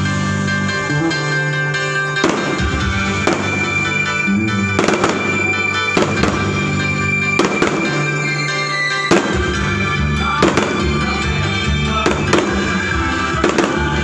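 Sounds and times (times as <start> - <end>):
loud music: 0.0 - 14.0
fireworks bangs: 2.2 - 11.4, 12.0 - 14.0.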